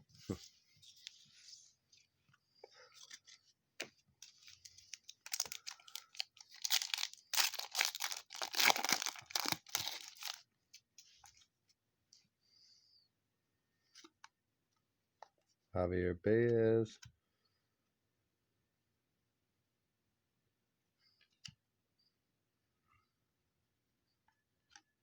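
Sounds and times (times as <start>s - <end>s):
foil wrapper tearing and crinkling: 4.4s - 10.4s.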